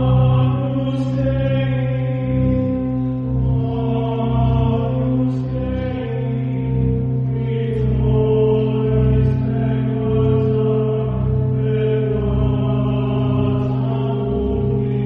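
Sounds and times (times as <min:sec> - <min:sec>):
low drone: 0:00.0 - 0:15.0
choir chanting long notes: 0:07.4 - 0:15.0.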